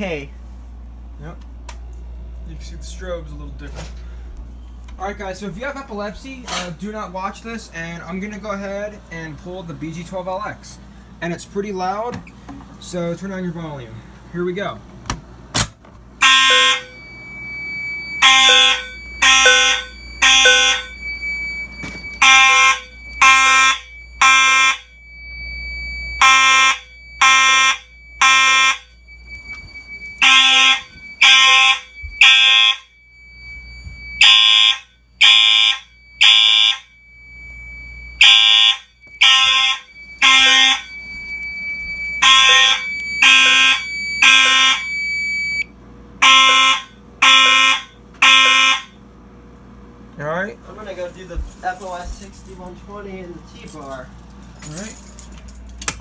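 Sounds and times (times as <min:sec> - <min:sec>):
steady high tone: 0:16.2 - 0:48.6
fire alarm horn blasts: 0:16.2 - 0:49.0.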